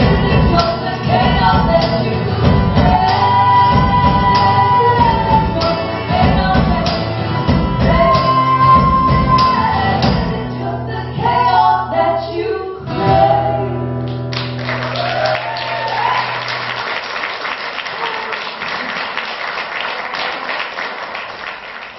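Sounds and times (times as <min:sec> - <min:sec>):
band instruments with beat: 0:00.0 - 0:10.5
person singing live song: 0:00.0 - 0:14.1
audience applause: 0:14.2 - 0:21.9.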